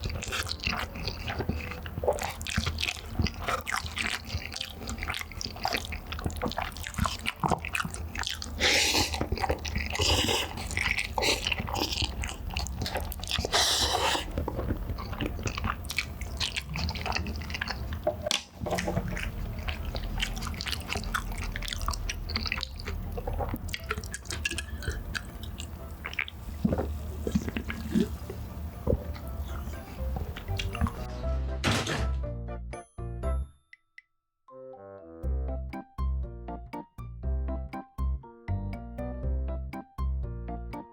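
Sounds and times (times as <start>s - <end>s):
close chewing and biting: 0.0s - 31.1s.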